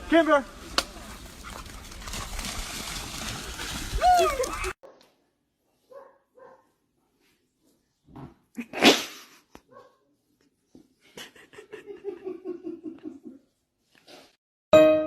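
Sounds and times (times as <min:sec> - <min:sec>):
dog wavering vocal run: 0:00.9 - 0:04.8.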